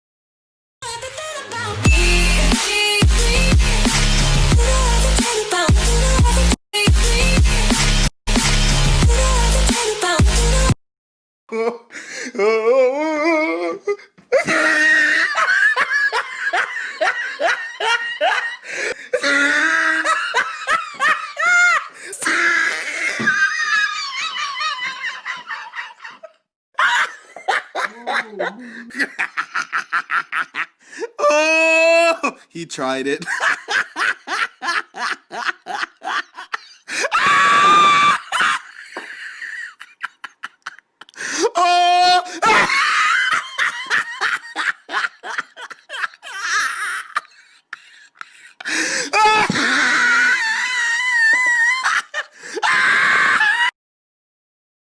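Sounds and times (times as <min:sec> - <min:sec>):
long hearty laugh: 0:13.9 - 0:21.9, 0:22.5 - 0:30.8, 0:33.2 - 0:41.2, 0:42.3 - 0:53.7
high shriek of laughter: 0:37.0 - 0:38.8, 0:49.2 - 0:53.7.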